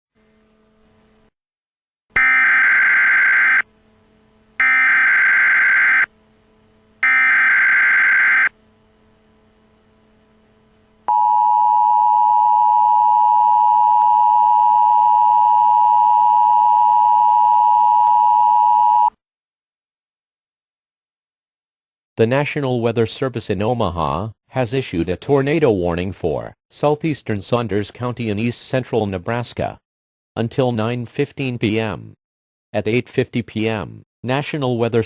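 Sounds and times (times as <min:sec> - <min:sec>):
two-tone alarm signal: 0:02.2 - 0:03.7, 0:04.6 - 0:06.1, 0:07.0 - 0:08.6, 0:11.1 - 0:19.1.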